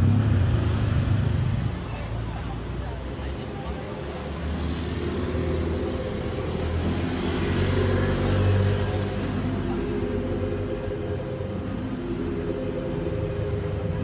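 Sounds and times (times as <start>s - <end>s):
vehicle engine running: 5.0s - 14.0s.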